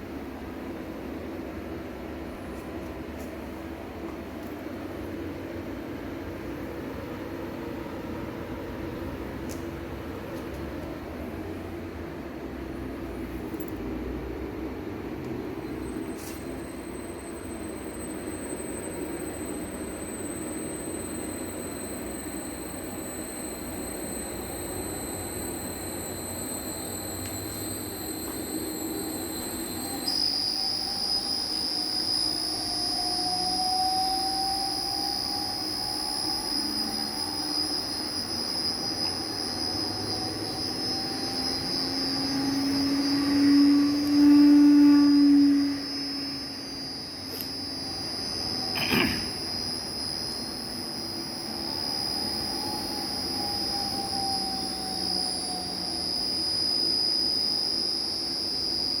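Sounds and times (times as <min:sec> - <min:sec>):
high-pitched switching whine: 0:00.0 - 0:59.0
electric motor whine: 0:12.6 - 0:59.0
sharp click: 0:47.3 - 0:47.6, 0:48.8 - 0:49.3.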